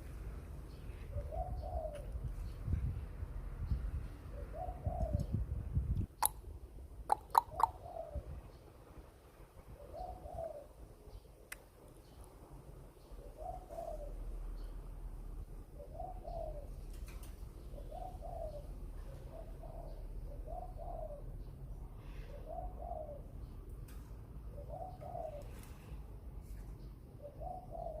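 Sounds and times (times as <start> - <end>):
dove cooing: 0.9 - 2.6, 4.3 - 5.4, 7.1 - 8.4, 9.8 - 11.2, 13.2 - 14.4, 15.7 - 23.4, 24.5 - 26.0, 27.2 - 28.0.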